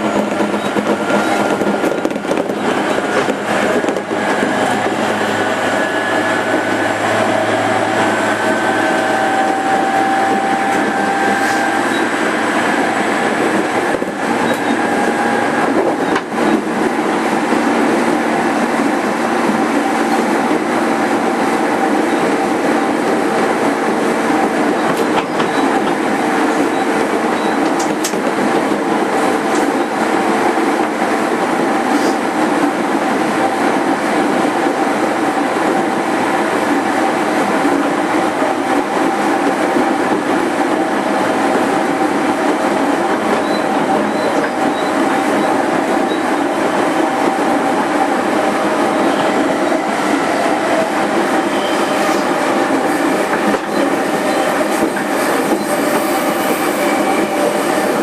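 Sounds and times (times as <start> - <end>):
train wheels rumbling on rail: 0.0 - 58.0.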